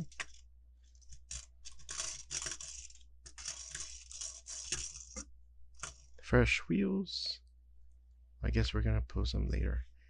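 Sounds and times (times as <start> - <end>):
small plastic pieces clicking: 0.0 - 6.1.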